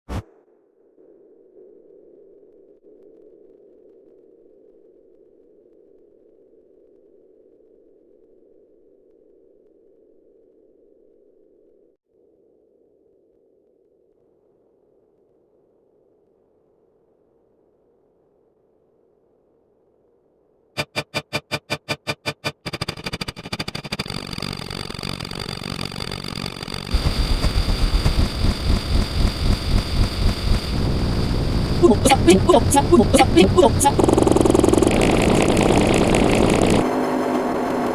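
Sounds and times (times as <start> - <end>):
accelerating repeated sound effect: 20.8 - 36.8
faint electronic hum: 20.8 - 36.8
low rapid fluttering: 20.8 - 36.8
steady high whine: 20.8 - 36.8.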